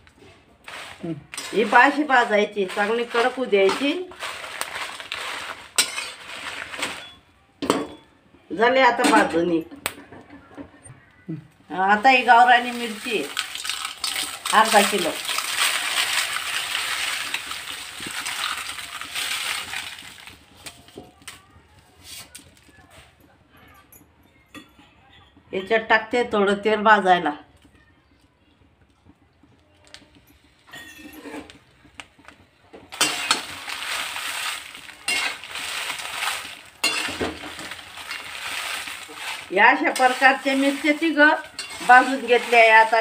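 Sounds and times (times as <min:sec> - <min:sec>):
dried chillies crackling into metal pan: 0:00.1 - 0:07.8, 0:11.7 - 0:22.7, 0:31.5 - 0:43.0
spatula clinking on pan: 0:36.8 - 0:38.2, 0:40.0 - 0:42.6.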